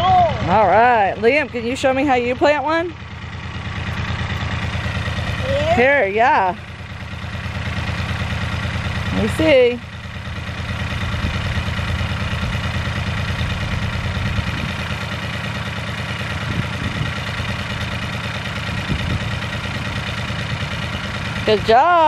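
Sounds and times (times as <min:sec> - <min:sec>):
low mechanical drone: 0:00.0 - 0:15.2, 0:16.2 - 0:22.0.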